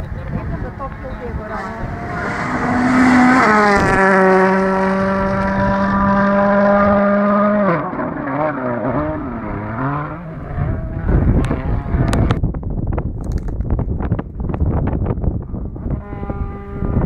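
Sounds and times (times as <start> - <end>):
rally car engine passing by: 0.8 - 12.4.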